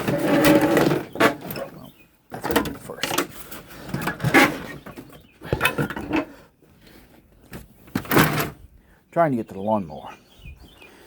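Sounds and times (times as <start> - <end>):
items knocking and scraping: 0.0 - 6.4, 7.4 - 8.6.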